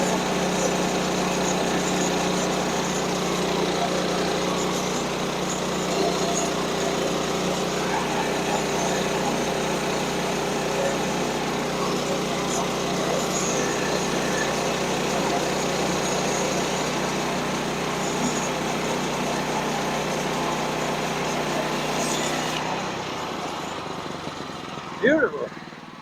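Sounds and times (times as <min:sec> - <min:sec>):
small gasoline engine running: 0:00.0 - 0:26.0.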